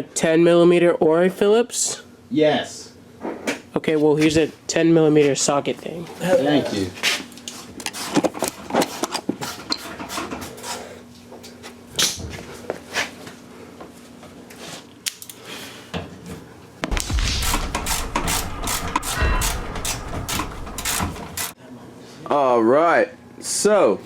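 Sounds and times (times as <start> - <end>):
low rumble: 16.8 - 21.6.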